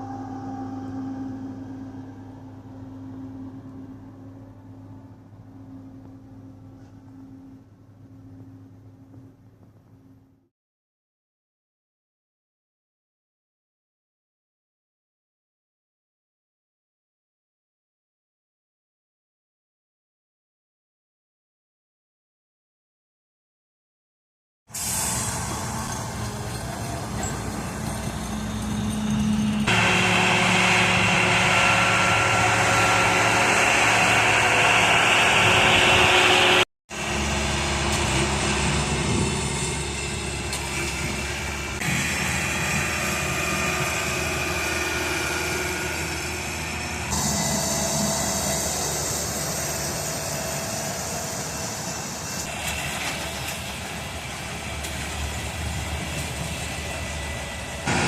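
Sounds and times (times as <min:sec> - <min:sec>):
construction vehicle engines running: 0:00.0 - 0:10.4, 0:24.8 - 0:58.0.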